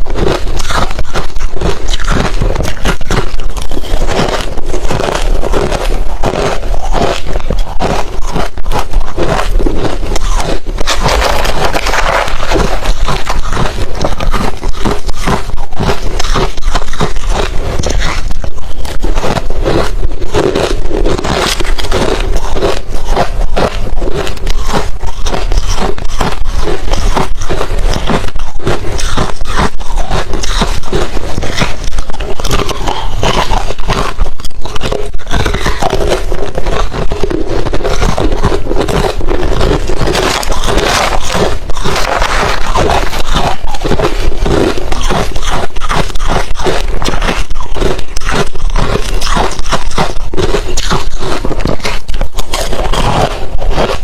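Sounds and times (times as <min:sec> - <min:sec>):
chewing crunchy ice: 0:00.0 - 0:54.0.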